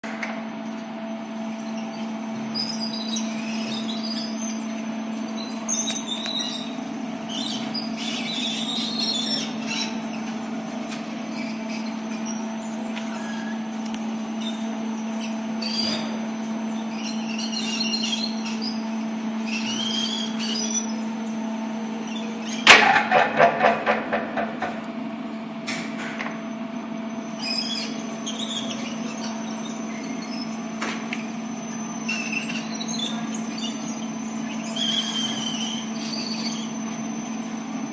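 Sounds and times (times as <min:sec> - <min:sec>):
elevator drive unit humming: 0:00.0 - 0:37.9
high squeaks: 0:01.3 - 0:24.8, 0:27.1 - 0:37.9
loud clack: 0:22.7 - 0:24.8.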